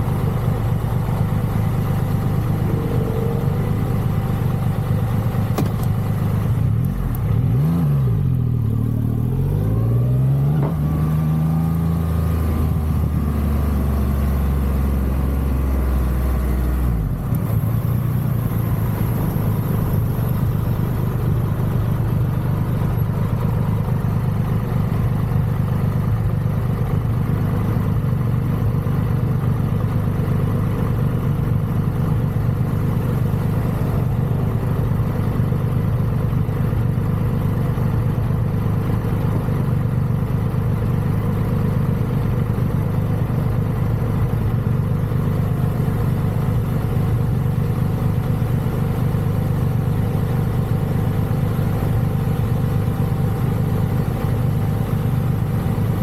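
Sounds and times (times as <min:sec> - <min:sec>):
motorcycle engine revving and pulling away: 0:00.0 - 0:24.5.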